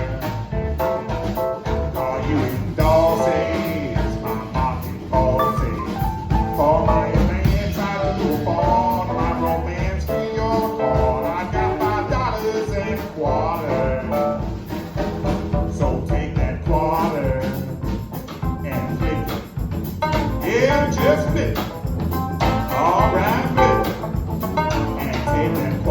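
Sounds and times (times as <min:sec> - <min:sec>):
sliding lead guitar line: 0:00.0 - 0:07.3, 0:20.0 - 0:25.9
bass: 0:00.0 - 0:25.9
drums: 0:00.0 - 0:25.9.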